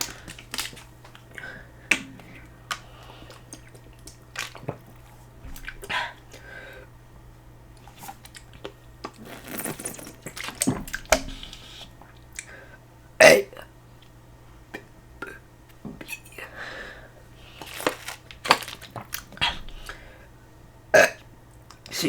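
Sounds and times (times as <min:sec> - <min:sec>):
handling noises: 0:17.4 - 0:19.4
rustling: 0:17.5 - 0:19.1.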